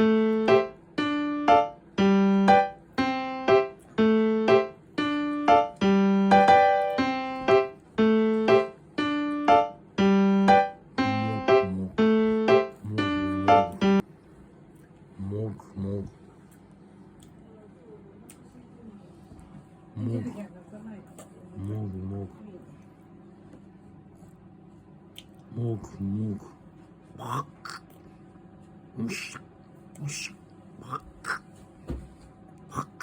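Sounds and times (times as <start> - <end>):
piano keyboard melody: 0.0 - 14.1.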